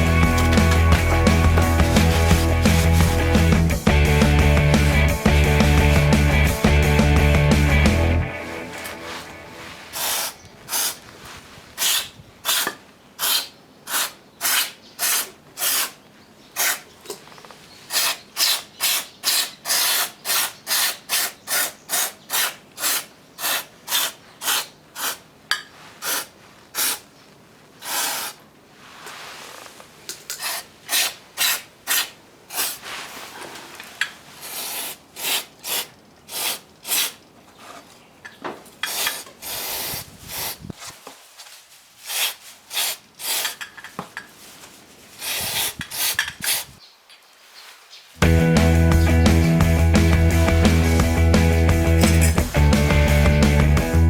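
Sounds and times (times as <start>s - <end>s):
rasping scrubbing strokes: 0.0s - 6.8s.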